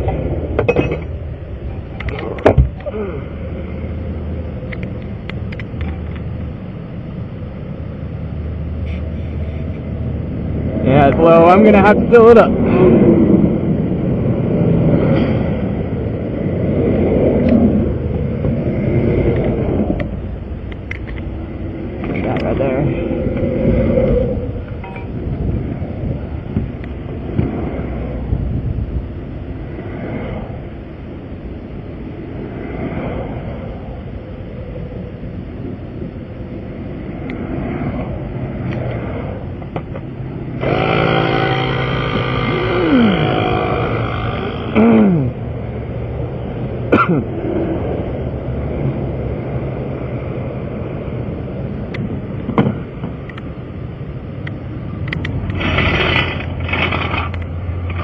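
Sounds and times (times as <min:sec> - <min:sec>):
traffic rumble: 0:00.0 - 0:58.0
loud droning motor hum: 0:35.1 - 0:52.4.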